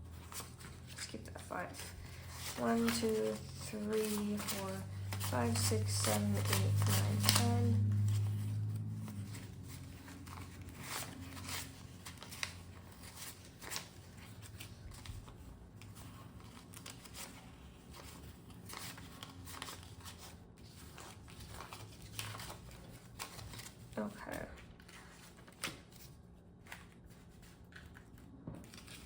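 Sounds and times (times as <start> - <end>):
faint low hum: 0.0 - 29.0
paper banknotes rustling: 0.0 - 29.0.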